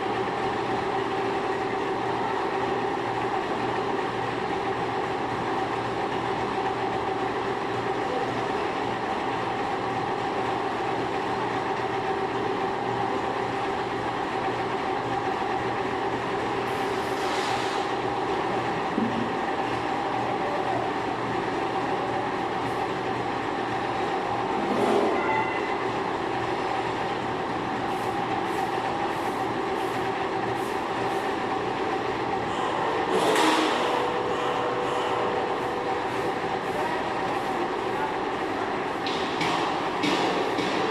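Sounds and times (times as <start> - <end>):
metalworking machinery running: 0.0 - 40.9.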